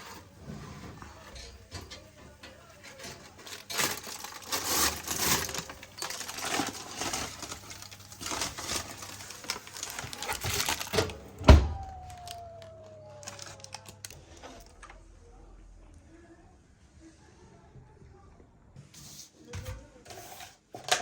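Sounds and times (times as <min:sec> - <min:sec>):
rustling and handling noises: 0:00.0 - 0:15.0
faint falling tone: 0:11.6 - 0:14.1.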